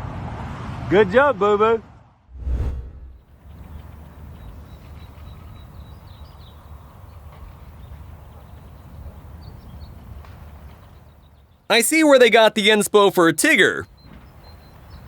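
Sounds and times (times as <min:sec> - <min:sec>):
low wind rumble: 0:02.3 - 0:03.2.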